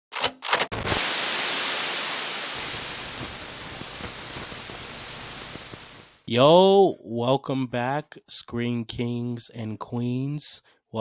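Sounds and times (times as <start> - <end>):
short sharp sounds: 0.6 - 6.2
static hiss with crackles: 0.8 - 6.3.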